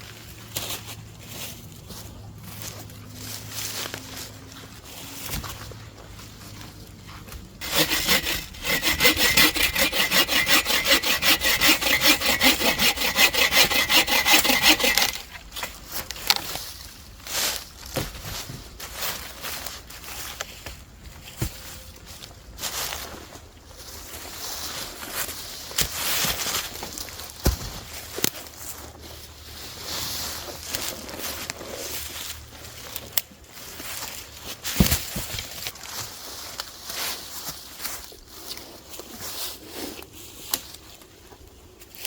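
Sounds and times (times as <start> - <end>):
hand saw cutting wood: 7.6 - 15.4.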